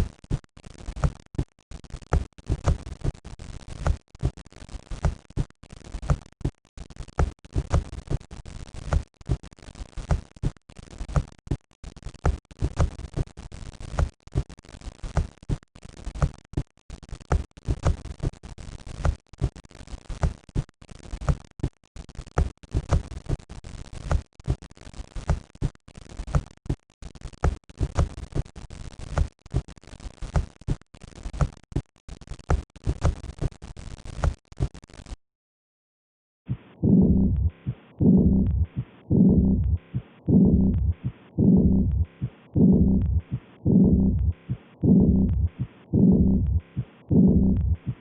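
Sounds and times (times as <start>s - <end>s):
heartbeats through stethoscope: 36.5s - 48.0s
muffled low sound: 36.5s - 48.0s.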